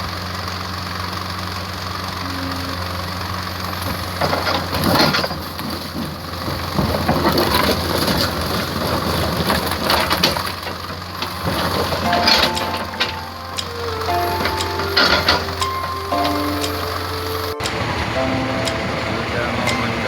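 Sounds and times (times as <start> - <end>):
engine idling hum: 0.0 - 20.0
rain pattering on vehicle: 3.2 - 20.0.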